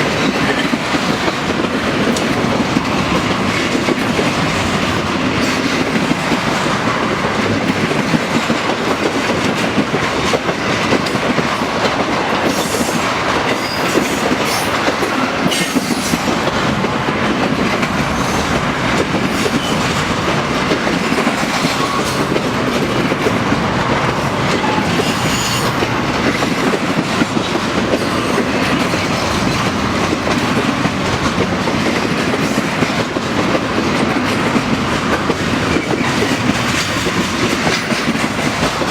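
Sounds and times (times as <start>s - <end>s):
train wheels rumbling on rails: 0.0s - 38.9s
high-pitched wheel squeals: 24.6s - 25.8s.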